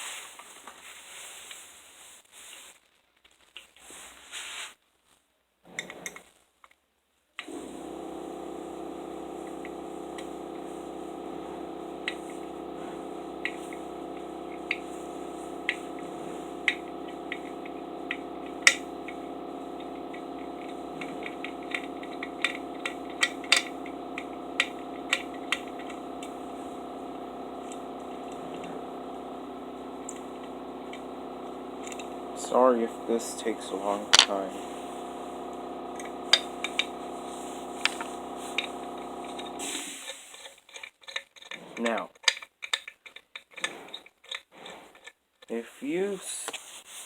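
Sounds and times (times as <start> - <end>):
steady hum: 7.5 - 40.0
screwdriver clicking on screws: 18.1 - 18.8, 20.4 - 26.3, 32.6 - 34.5, 36.0 - 36.9, 37.8 - 38.7, 39.3 - 45.5.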